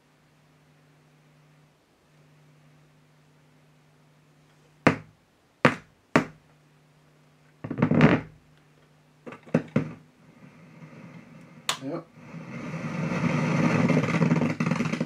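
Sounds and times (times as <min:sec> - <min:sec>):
low mains hum: 0:00.0 - 0:15.0
sharp knocks: 0:04.9 - 0:05.1, 0:05.7 - 0:06.4
rough rumbling scrape: 0:12.2 - 0:15.0.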